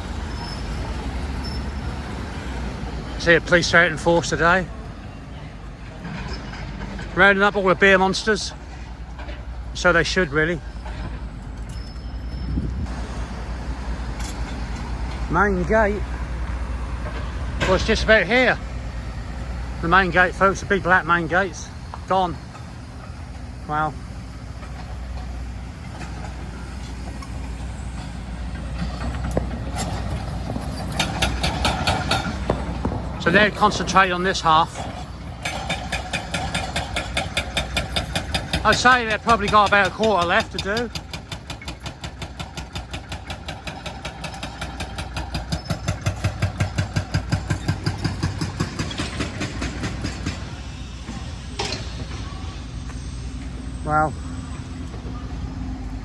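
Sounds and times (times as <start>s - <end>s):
heavy vehicle engine rumble: 0.0s - 56.0s
large engine knocking rapidly: 30.8s - 34.2s, 35.4s - 50.5s.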